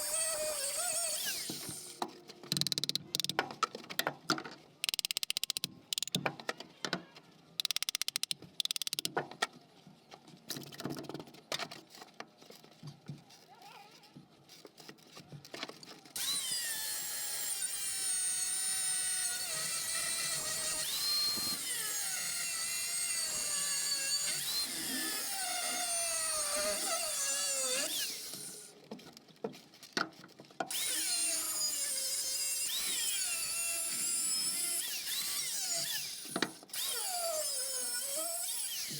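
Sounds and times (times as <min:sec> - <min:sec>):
angle grinder cutting metal: 0:00.0 - 0:02.0
metal knocks and clicks: 0:02.5 - 0:04.1, 0:04.8 - 0:06.3, 0:07.6 - 0:09.1.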